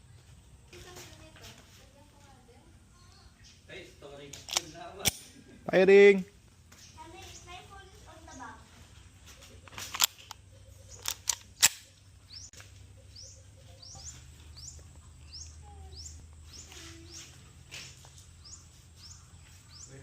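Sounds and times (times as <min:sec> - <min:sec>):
bird chirping: 0:02.9 - 0:06.1, 0:06.7 - 0:20.0.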